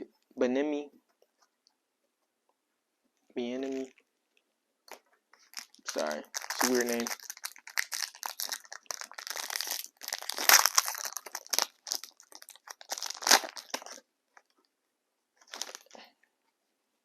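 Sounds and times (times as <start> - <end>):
sharp crackles: 4.9 - 14.0
wrapper crinkling and rustling: 4.9 - 14.5, 15.4 - 16.0.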